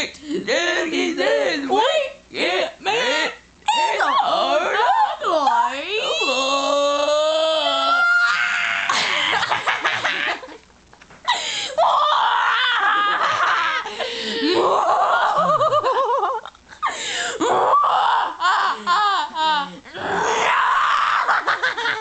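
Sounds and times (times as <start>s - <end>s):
women making warbling vocal noises: 2.4s - 8.9s, 14.4s - 15.8s, 17.4s - 22.0s
women laughing: 8.9s - 10.6s, 12.6s - 16.9s, 21.0s - 22.0s.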